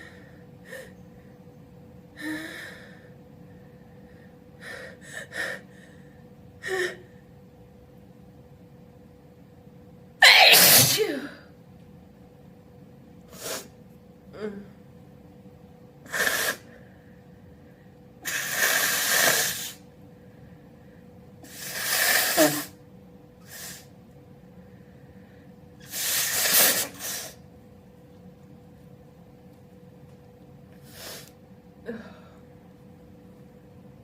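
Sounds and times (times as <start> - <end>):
person sneezing loudly: 10.2 - 11.4
hissing breaths: 18.2 - 19.9, 24.7 - 27.4, 30.8 - 32.3.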